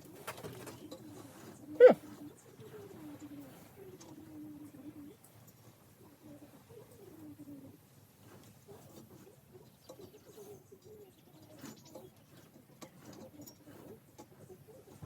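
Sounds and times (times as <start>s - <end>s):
faint bird calls: 0.6s - 5.2s.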